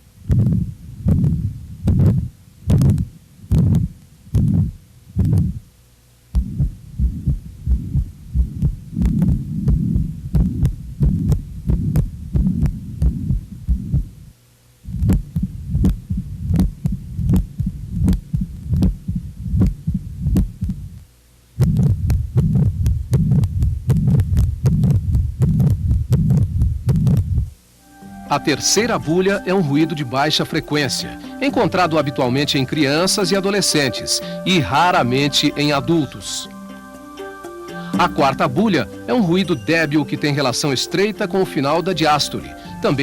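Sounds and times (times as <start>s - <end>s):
heartbeats with murmurs: 0.3s - 5.7s, 6.3s - 21.0s, 21.6s - 27.6s.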